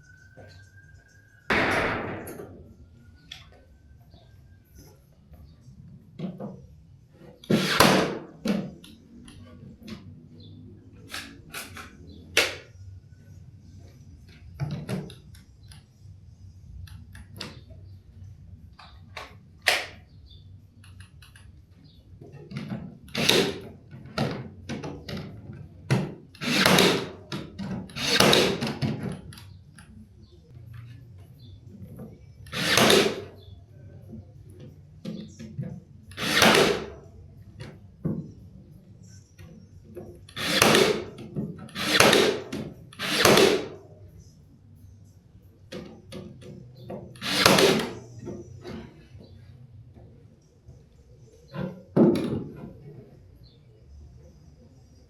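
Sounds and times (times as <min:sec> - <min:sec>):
short noisy bursts of woodwork: 0:07.4 - 0:08.2, 0:23.1 - 0:23.7, 0:26.3 - 0:27.2, 0:27.9 - 0:28.8, 0:32.4 - 0:33.3, 0:36.1 - 0:37.0, 0:40.3 - 0:41.1, 0:41.7 - 0:43.8, 0:47.2 - 0:48.1.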